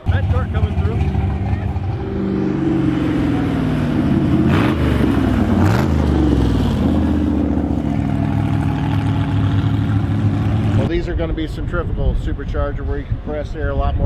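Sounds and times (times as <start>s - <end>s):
engine revving: 0.0s - 10.9s
vehicle engines running: 0.0s - 10.9s.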